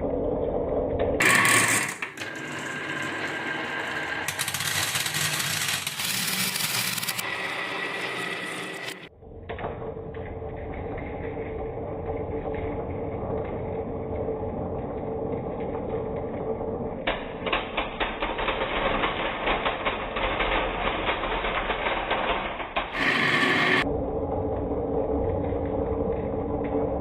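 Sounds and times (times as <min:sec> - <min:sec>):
marbles rattling down wooden track: 0:01.2 - 0:09.0.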